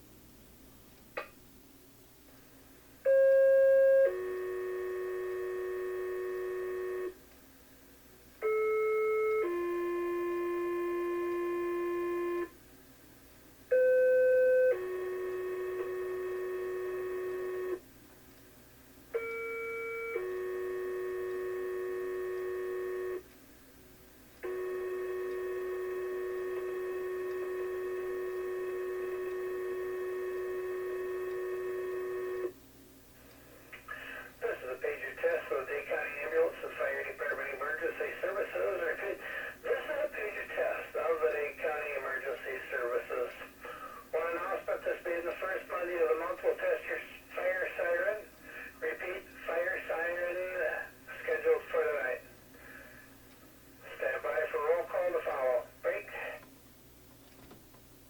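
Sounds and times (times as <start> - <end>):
two-tone pager alert tones: 8.4 - 12.5, 19.2 - 23.2, 24.4 - 32.5.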